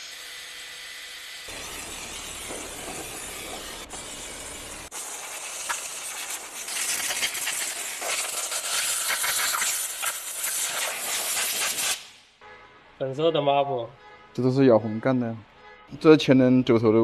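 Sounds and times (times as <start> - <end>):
scratchy scrubbing of wheel hub: 1.5 - 12.0.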